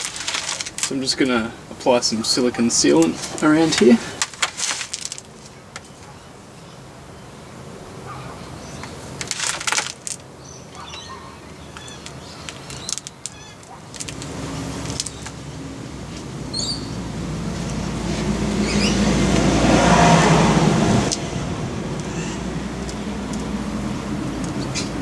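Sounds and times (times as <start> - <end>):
vehicle engine approaching: 14.0 - 25.0.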